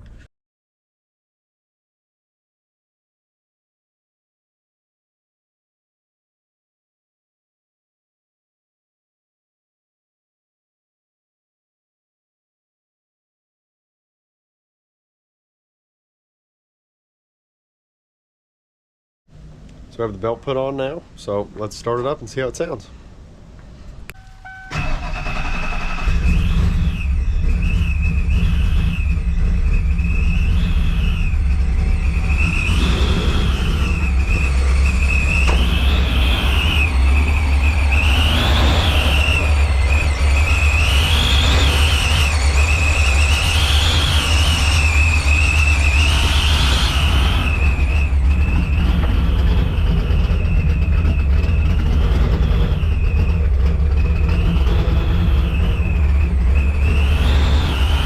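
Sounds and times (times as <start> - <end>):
deep exhaust rumble: 19.3 - 58.0
engine throttle blips: 19.3 - 58.0
supercharger whine: 24.0 - 58.0.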